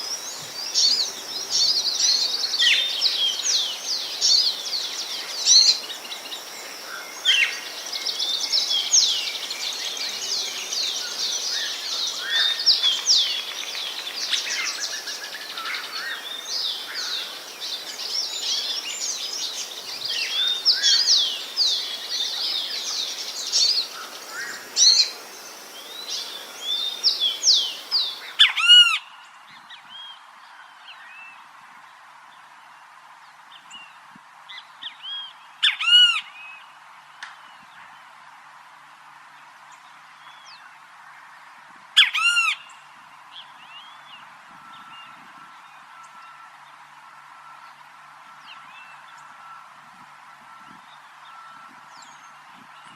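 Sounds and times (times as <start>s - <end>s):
birds chirping in chorus: 0.0s - 29.2s, 42.1s - 52.9s.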